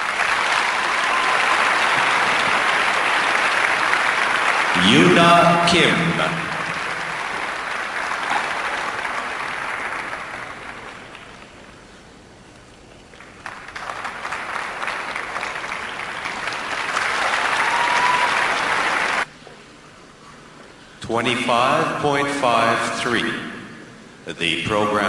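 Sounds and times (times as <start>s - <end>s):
crowd applauding: 0.0s - 11.7s, 13.1s - 19.3s.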